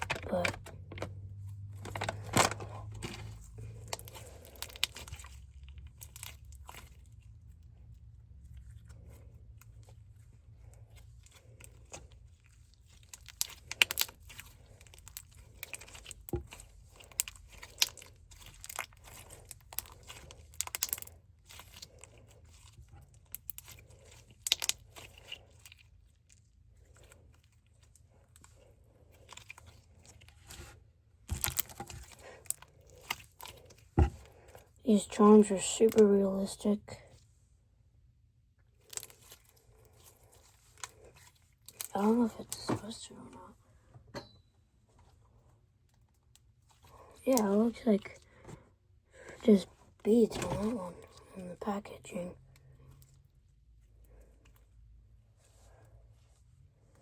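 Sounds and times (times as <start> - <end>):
slime squished by hand: 0.0 - 36.7, 38.6 - 43.5.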